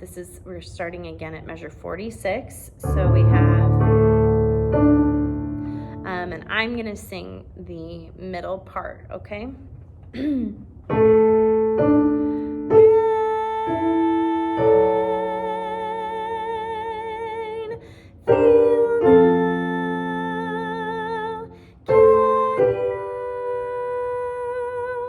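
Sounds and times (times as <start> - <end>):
keyboard playing chords: 2.9 - 6.1, 10.9 - 16.2
woman singing with vibrato: 12.7 - 25.0.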